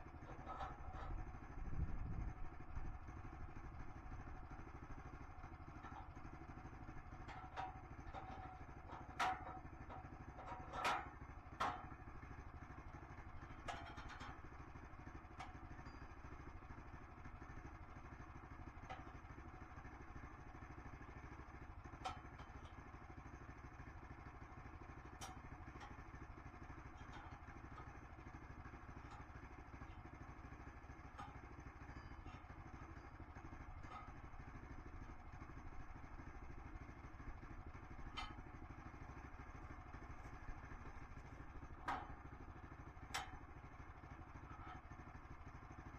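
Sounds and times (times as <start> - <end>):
small engine running: 0.0 - 45.9
sharp clicks and knocks: 40.0 - 43.6.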